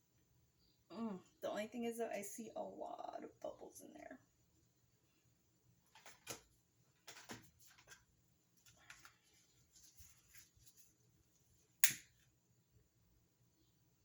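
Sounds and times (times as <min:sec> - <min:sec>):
rustling: 0:07.0 - 0:11.2
sharp click: 0:11.8 - 0:12.1.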